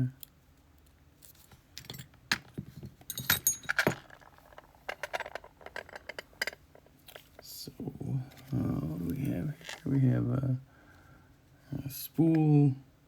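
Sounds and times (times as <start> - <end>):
metal lock pins clicking and clinking: 1.7 - 6.6.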